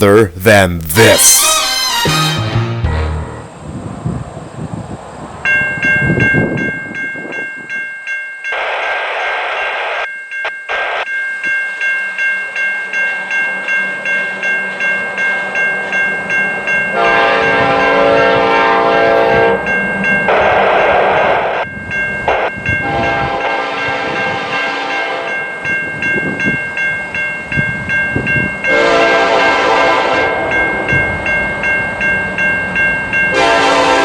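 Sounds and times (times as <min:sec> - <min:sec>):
train horn chord: 0:01.2 - 0:03.6, 0:16.9 - 0:21.6, 0:22.3 - 0:25.4, 0:28.7 - 0:30.7, 0:33.3 - 0:34.0
pulsing high ringing: 0:05.4 - 0:34.0.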